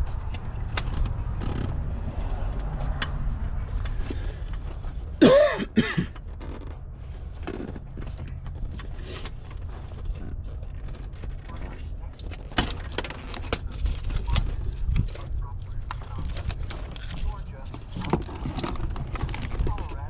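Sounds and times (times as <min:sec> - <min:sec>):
low rumble: 0:00.0 - 0:05.2
person coughing: 0:05.2 - 0:06.2.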